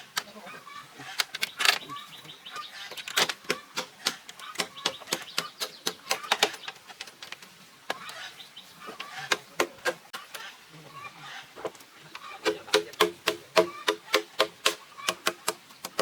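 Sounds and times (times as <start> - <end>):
sharp clicks and knocks: 2.9 - 8.2.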